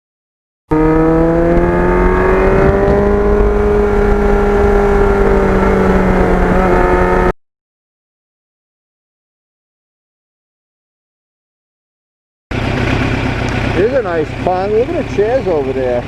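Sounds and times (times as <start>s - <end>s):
motorcycle engine pulling: 0.7s - 7.3s.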